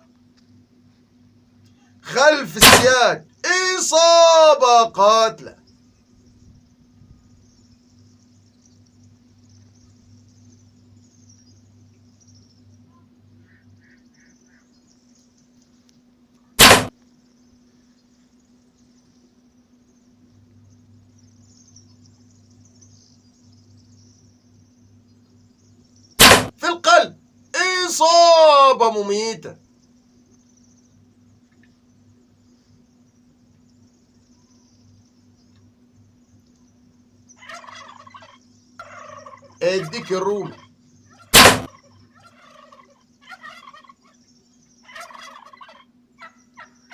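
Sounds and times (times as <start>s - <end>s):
low steady hum: 0.0s - 46.9s
crickets chirping: 1.2s - 16.2s, 16.9s - 46.9s
bow string thwack: 16.6s - 16.9s, 26.2s - 26.5s, 41.4s - 41.7s.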